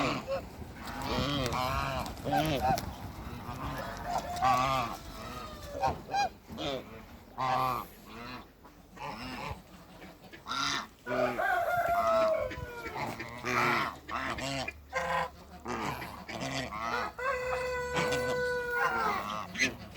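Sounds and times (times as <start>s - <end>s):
geese honking: 0.0s - 19.9s
rooster crowing: 3.7s - 5.8s, 11.1s - 13.0s, 16.9s - 19.2s.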